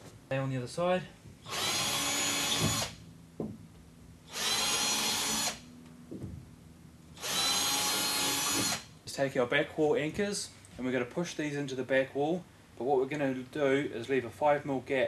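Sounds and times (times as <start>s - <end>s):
cordless drill drilling into wall: 1.5s - 3.0s, 4.3s - 5.6s, 7.2s - 8.9s.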